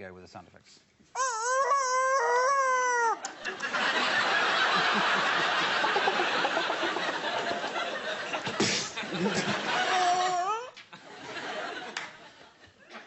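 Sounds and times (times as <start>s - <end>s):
wailing vocal sound effect: 1.2s - 3.2s
studio audience laughing: 3.2s - 13.0s.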